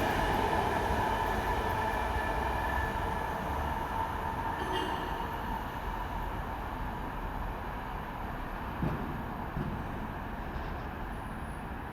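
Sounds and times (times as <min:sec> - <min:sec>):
train rolling on rails: 0:00.0 - 0:11.9.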